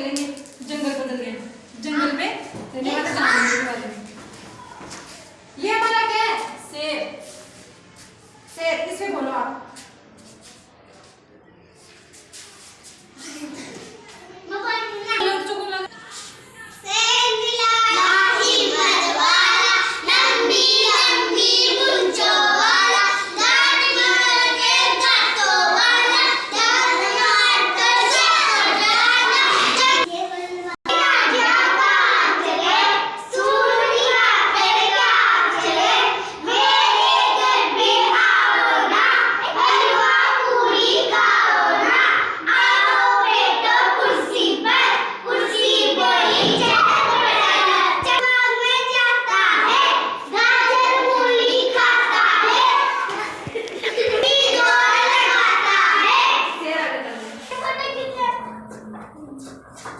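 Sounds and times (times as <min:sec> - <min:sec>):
children singing: 0:17.4 - 0:30.1, 0:30.8 - 0:56.6.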